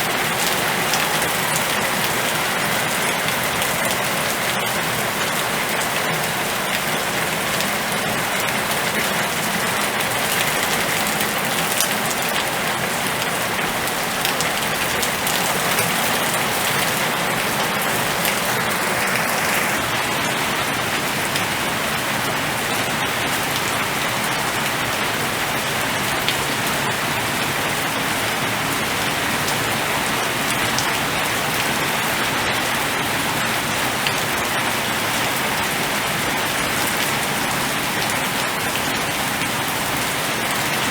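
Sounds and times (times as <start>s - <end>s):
rain hissing on surfaces: 0.0s - 40.9s
rain drop ticks: 0.1s - 19.8s.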